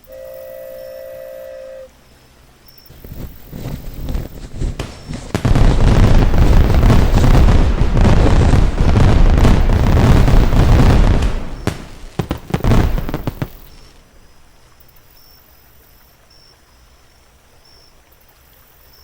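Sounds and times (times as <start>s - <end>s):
fireworks bursts and crackle: 2.9s - 14.1s.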